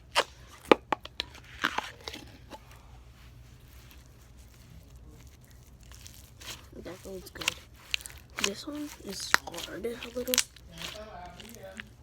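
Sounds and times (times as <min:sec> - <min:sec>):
low steady hum: 0:00.0 - 0:12.0
slime crackling and squishing: 0:00.0 - 0:12.0.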